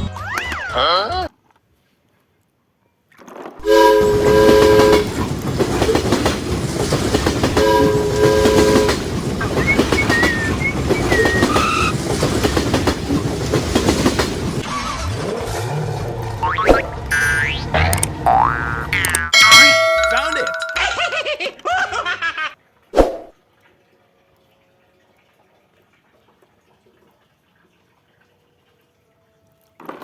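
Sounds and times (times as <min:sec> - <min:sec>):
train horn blasts: 0:03.6 - 0:05.2, 0:07.4 - 0:09.2
train wheels clickety-clack: 0:03.6 - 0:14.6.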